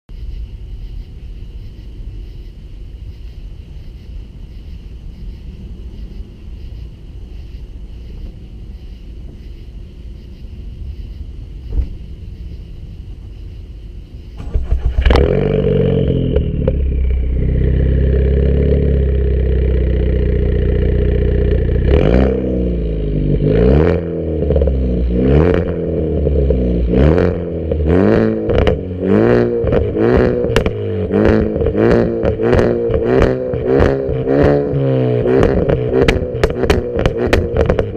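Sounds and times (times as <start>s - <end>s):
car engine revving: 14.2s - 37.9s
car engine starting up: 14.2s - 37.9s
exhaust crackles and pops: 14.4s - 37.9s.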